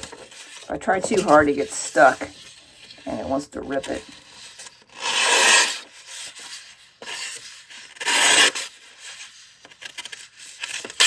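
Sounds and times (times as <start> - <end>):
knife blade slicing paper: 4.1 - 8.8.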